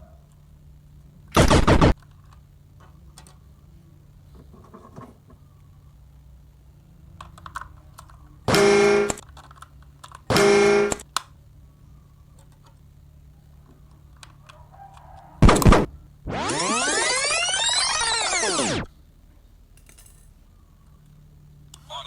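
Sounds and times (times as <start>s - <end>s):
plastic toys clicking: 7.1s - 8.2s, 9.0s - 10.3s
toy electronic horn toots: 8.5s - 9.2s, 10.3s - 11.1s, 15.5s - 18.9s.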